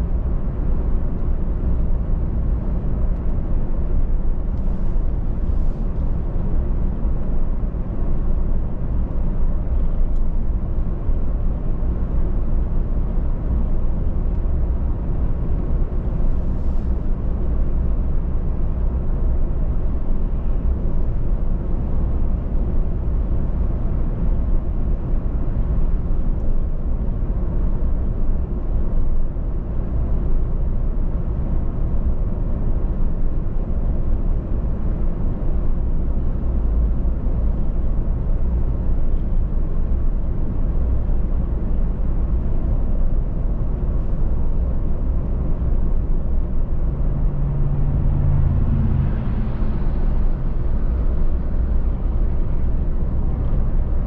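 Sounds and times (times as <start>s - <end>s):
tyre and road noise: 43.8s - 54.0s
car engine: 44.0s - 54.0s.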